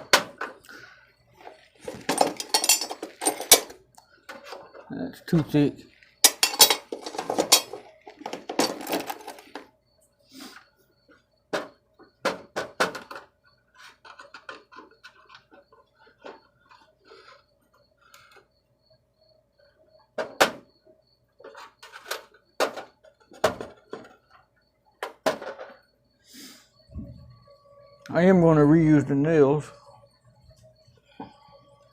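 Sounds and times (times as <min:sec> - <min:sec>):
faint steady hum: 0:00.0 - 0:31.9
metal tools clinking on metal: 0:01.9 - 0:03.8, 0:04.5 - 0:09.6.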